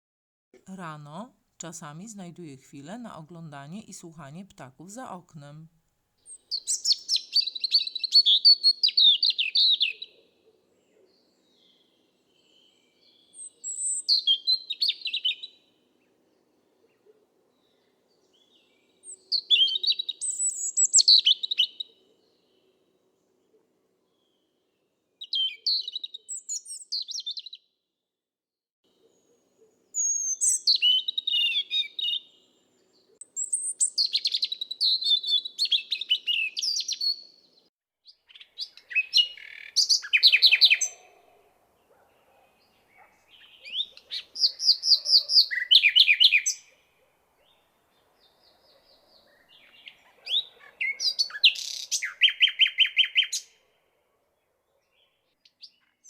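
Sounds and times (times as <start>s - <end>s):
songbird chirps and whistles: 6.2s - 10.2s, 11.4s - 15.6s, 18.3s - 22.0s, 25.2s - 27.6s, 30.0s - 32.4s, 33.2s - 37.3s, 43.0s - 46.7s, 48.2s - 53.6s.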